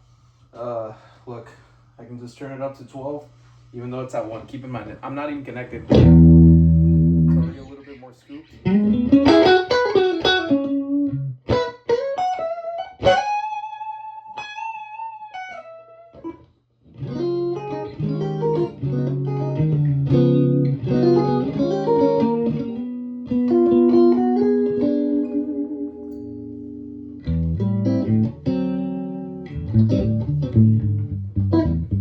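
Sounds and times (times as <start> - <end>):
electric guitar through valve amp: 5.9 - 7.7, 8.5 - 32.0.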